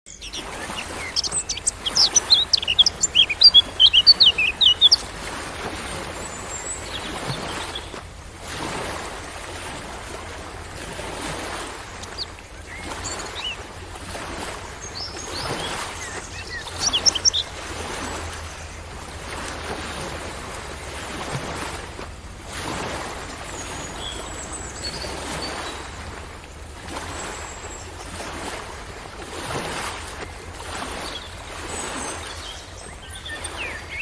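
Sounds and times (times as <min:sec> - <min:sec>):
birds chirping: 0:00.1 - 0:08.1, 0:11.8 - 0:21.4, 0:23.2 - 0:26.3, 0:26.9 - 0:34.0
ocean waves: 0:00.1 - 0:34.0.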